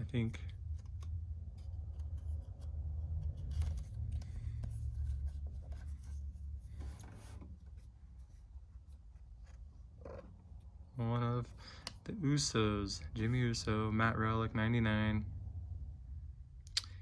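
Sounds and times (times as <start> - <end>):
cards rustling and scraping: 0.0 - 12.2.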